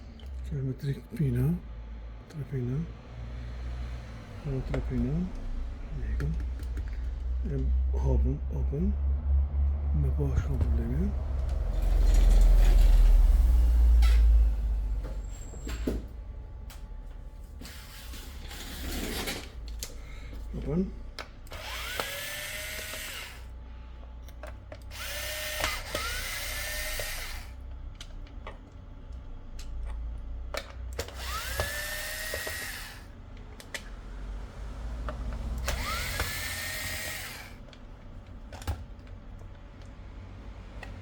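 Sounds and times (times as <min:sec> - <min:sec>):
electric screwdriver motor whine: 0:21.5 - 0:23.5, 0:24.9 - 0:27.6, 0:31.0 - 0:33.1, 0:35.6 - 0:37.6.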